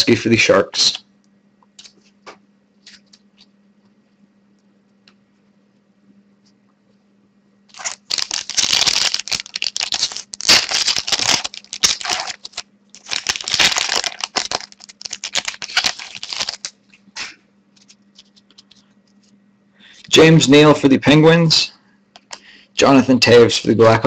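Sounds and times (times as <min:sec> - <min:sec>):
foil wrapper tearing and crackling: 0:07.7 - 0:16.8.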